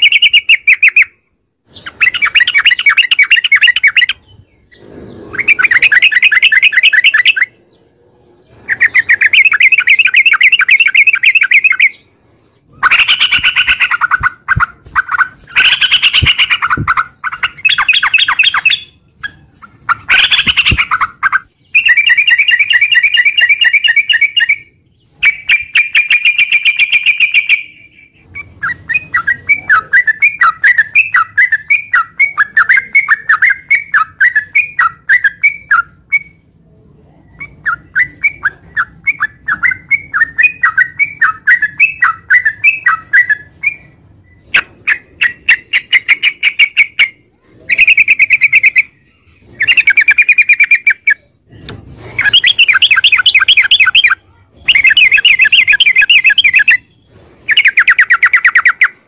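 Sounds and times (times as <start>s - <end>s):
bird singing bubbly chirps: 0.0s - 7.8s, 8.7s - 19.0s, 52.2s - 58.9s
bird rattling trills: 12.8s - 24.5s.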